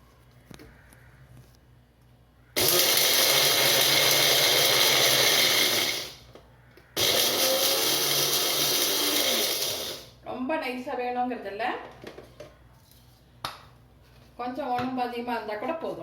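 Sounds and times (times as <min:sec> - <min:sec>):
electric mixer grinder grinding spices: 0:02.6 - 0:06.2, 0:07.0 - 0:10.1.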